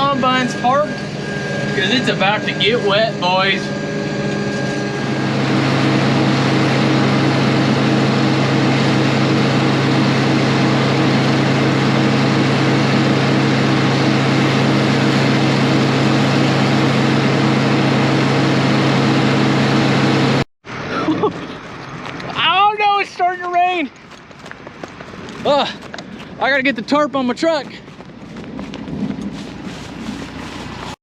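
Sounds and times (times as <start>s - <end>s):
diesel engine running steadily: 0.0s - 31.0s.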